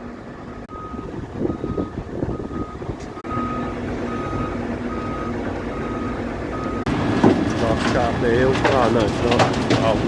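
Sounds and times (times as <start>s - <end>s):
heavy diesel engine running: 0.0s - 10.0s
reversing alarm beeping: 0.7s - 6.9s.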